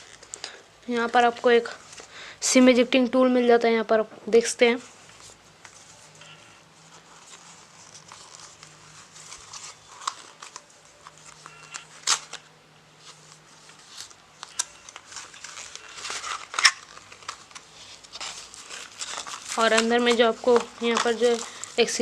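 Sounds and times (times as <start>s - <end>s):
packaging crinkling and rustling: 6.8s - 22.0s.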